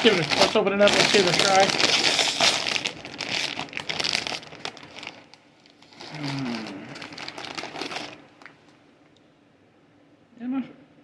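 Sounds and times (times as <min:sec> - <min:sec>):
plastic bag crinkling: 0:00.0 - 0:08.7.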